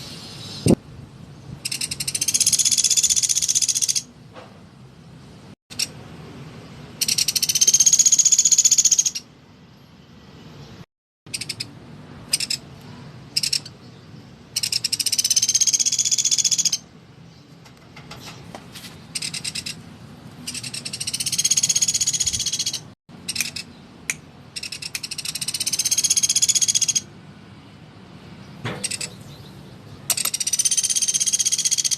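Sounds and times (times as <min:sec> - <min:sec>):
woodpecker trilling calls: 0:01.6 - 0:04.1, 0:07.0 - 0:09.3, 0:11.3 - 0:12.7, 0:13.3 - 0:13.8, 0:14.5 - 0:16.9, 0:19.1 - 0:19.8, 0:20.5 - 0:23.8, 0:24.6 - 0:27.1, 0:28.8 - 0:31.9.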